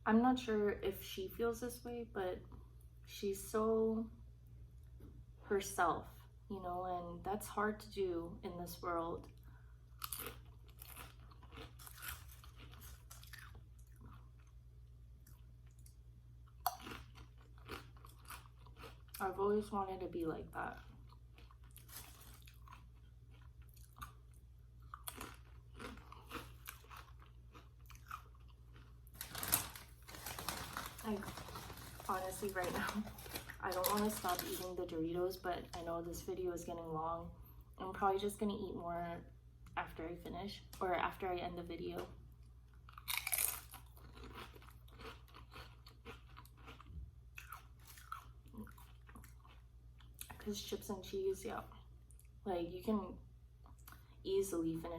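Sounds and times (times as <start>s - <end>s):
chewing crunchy chips: 9.9s - 14.6s, 15.2s - 19.4s, 20.6s - 34.7s, 42.7s - 50.4s.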